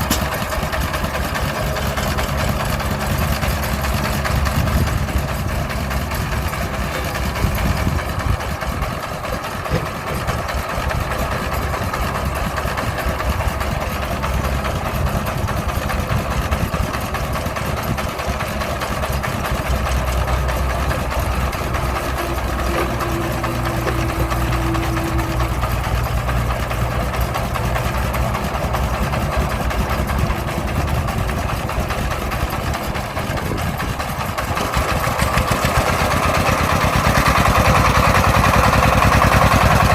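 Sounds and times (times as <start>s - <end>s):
heavy machine engine humming: 0.0s - 39.9s.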